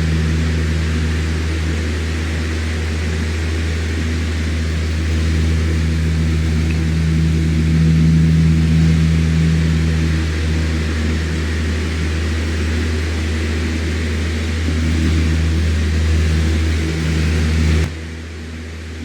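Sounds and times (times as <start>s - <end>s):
electric fan running: 0.0s - 19.0s.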